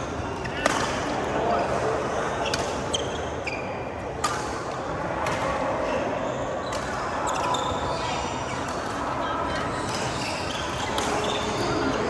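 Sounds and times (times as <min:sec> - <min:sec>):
shoe squeaks on court floor: 0:02.4 - 0:03.8, 0:06.2 - 0:08.6.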